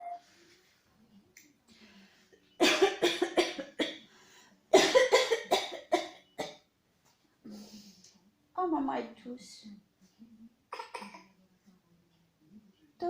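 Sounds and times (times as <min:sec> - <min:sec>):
woman coughing hard: 0:02.6 - 0:04.0, 0:04.8 - 0:06.2.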